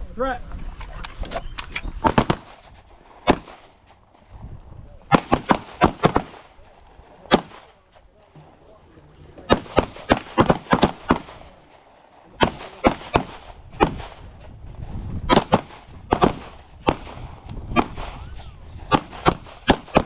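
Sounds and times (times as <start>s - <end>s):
gunshots: 2.0s - 4.0s, 5.1s - 8.1s, 9.4s - 14.4s, 15.2s - 20.0s.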